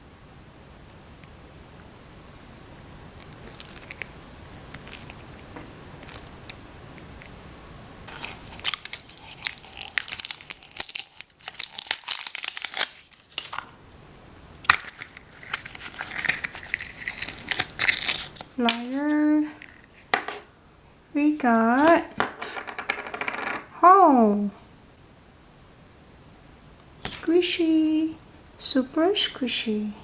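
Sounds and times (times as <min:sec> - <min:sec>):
plastic packaging crinkling and tearing: 0:03.2 - 0:04.1, 0:04.7 - 0:05.2, 0:08.1 - 0:13.8, 0:14.6 - 0:20.1.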